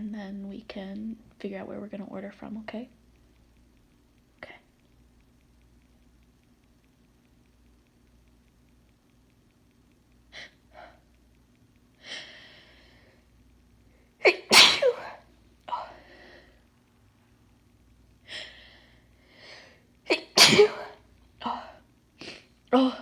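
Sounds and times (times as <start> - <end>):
woman breathing heavily: 12.0 - 13.2, 15.7 - 16.7, 18.2 - 19.9
woman sneezing: 14.2 - 15.9, 20.1 - 23.0.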